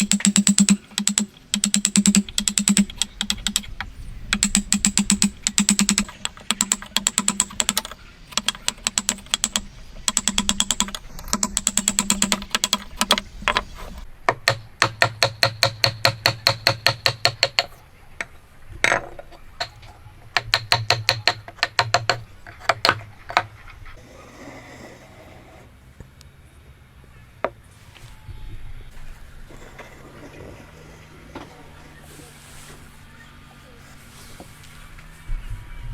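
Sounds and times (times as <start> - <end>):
hammer tapping chisel into wood: 0.0 - 3.7, 4.4 - 13.7, 14.3 - 17.7, 20.4 - 23.5.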